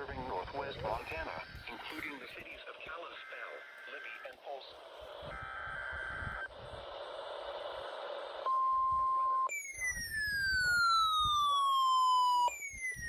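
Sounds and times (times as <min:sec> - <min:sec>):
radio hiss: 0:00.0 - 0:09.4
steady warning alarm tone: 0:01.1 - 0:13.0
data tone burst: 0:08.4 - 0:12.8
siren-like alarm falling in pitch: 0:08.4 - 0:13.0.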